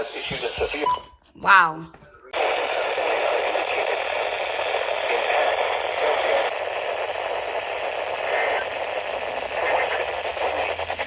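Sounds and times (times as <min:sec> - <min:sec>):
radio static hiss: 0:00.0 - 0:01.0, 0:02.1 - 0:11.0
faint crackle: 0:02.4 - 0:11.0.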